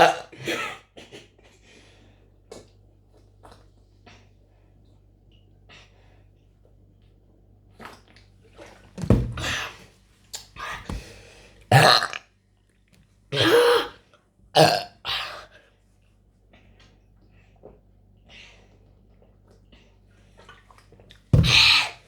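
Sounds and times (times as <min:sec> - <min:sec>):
person burping loudly: 0:11.7 - 0:12.2, 0:13.4 - 0:14.0, 0:14.6 - 0:15.2.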